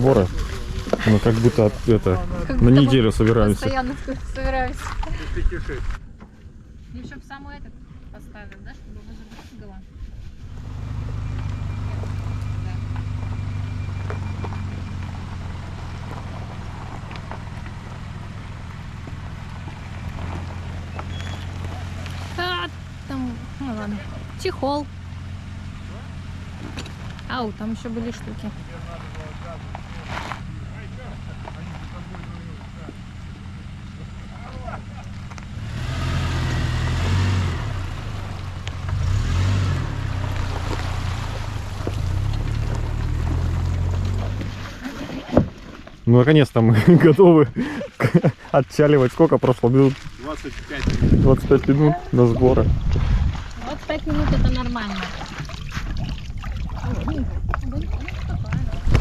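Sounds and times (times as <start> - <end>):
engine idling: 10.2 - 39.3.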